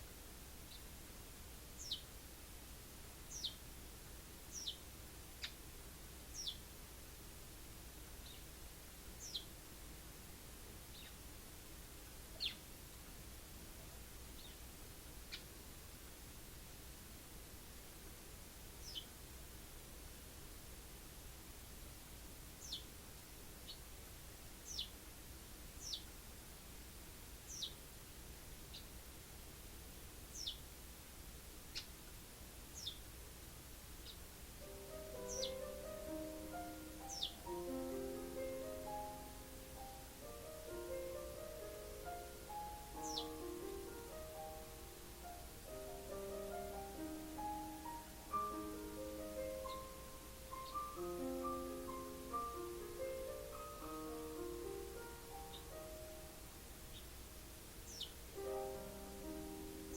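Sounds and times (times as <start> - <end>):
sparrow chirping: 1.8 - 2.1, 3.3 - 3.6, 4.5 - 5.6, 6.3 - 6.7, 8.2 - 8.5, 9.2 - 9.6, 10.9 - 11.2, 12.3 - 12.7, 14.3 - 14.6, 15.3 - 15.5, 18.8 - 19.2, 22.6 - 23.0, 24.6 - 25.0, 25.8 - 26.1, 27.4 - 27.8, 28.6 - 29.0, 30.3 - 30.7, 31.7 - 32.0, 32.7 - 33.1, 34.0 - 34.3, 35.0 - 37.7, 42.4 - 44.1, 49.5 - 52.6, 54.6 - 56.2, 56.8 - 58.4.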